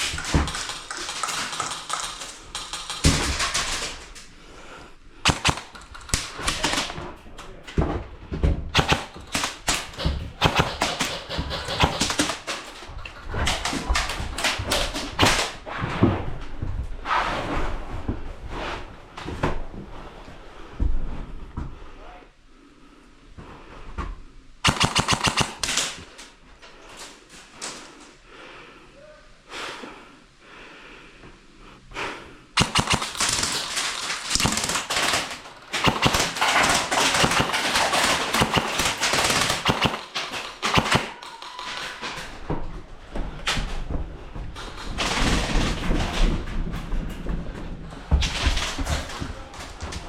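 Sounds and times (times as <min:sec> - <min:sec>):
airsoft rifle full-auto burst: 0:05.3 - 0:06.9, 0:24.6 - 0:26.0, 0:32.6 - 0:41.4.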